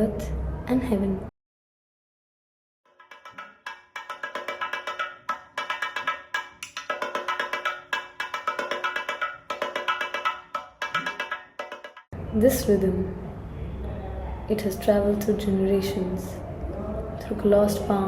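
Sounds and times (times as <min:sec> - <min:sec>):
fast stick drumming: 0:02.9 - 0:12.1.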